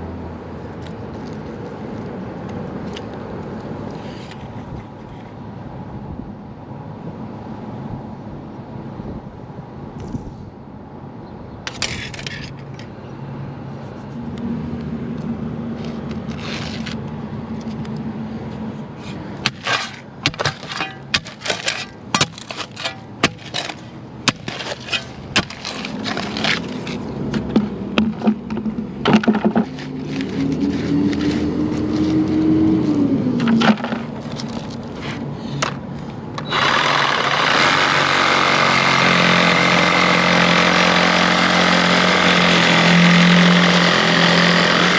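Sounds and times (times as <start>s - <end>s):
engine running: 13.9s - 44.9s
loud engine running: 19.2s - 44.9s
knocks and clanks: 27.3s - 29.9s, 33.4s - 34.7s.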